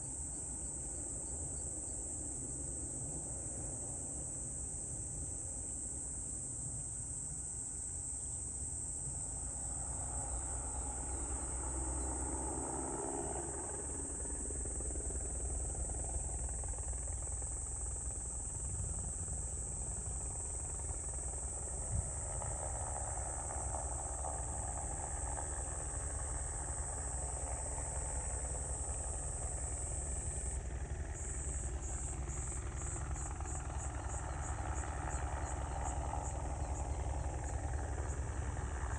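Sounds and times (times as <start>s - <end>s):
insects trilling: 3.4s - 38.9s
helicopter rumble: 9.0s - 38.9s.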